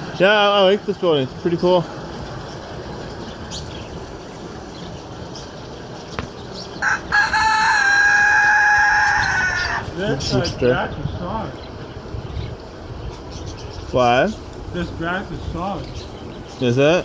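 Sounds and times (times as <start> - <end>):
steady background hiss: 0.0 - 17.0
rooster crowing: 6.8 - 10.0.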